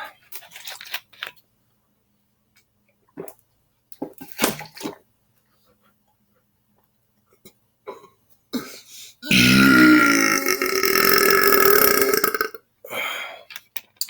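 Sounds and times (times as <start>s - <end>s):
sipping and swallowing: 9.3s - 12.6s.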